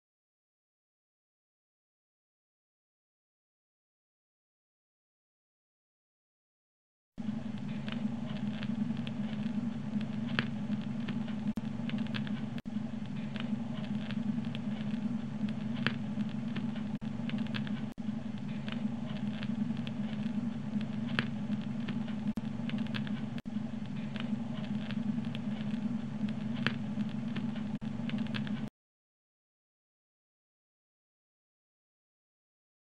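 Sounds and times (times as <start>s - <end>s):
record crackling and ticks: 7.2s - 28.7s
turntable low hum: 7.2s - 28.7s.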